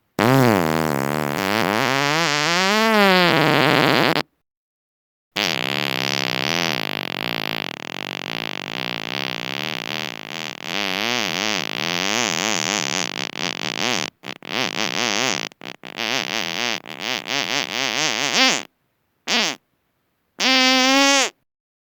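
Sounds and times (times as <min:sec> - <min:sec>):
long wavering fart: 0:00.2 - 0:04.3, 0:05.4 - 0:18.7, 0:19.3 - 0:19.6, 0:20.4 - 0:21.4
sputtering farts: 0:00.2 - 0:04.3, 0:05.4 - 0:18.7, 0:19.3 - 0:19.6, 0:20.4 - 0:21.4.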